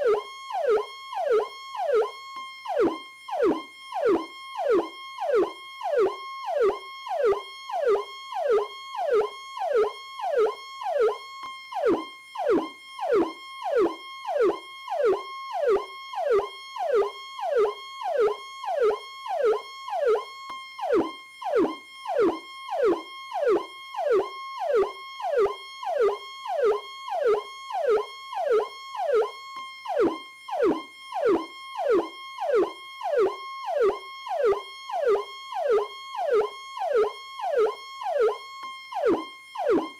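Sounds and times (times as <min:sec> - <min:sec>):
electronic police siren: 0:00.0 - 0:39.9.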